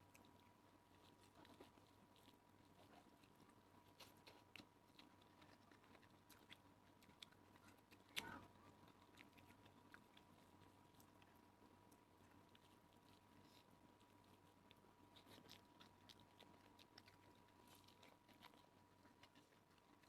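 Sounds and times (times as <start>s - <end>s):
faint chewing: 0.0s - 20.0s.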